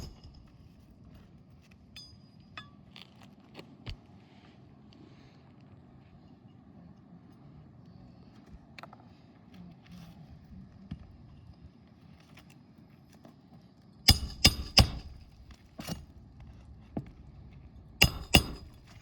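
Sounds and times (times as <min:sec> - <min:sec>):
metal tool striking roof: 0:00.0 - 0:00.5, 0:14.1 - 0:16.0, 0:18.0 - 0:19.0.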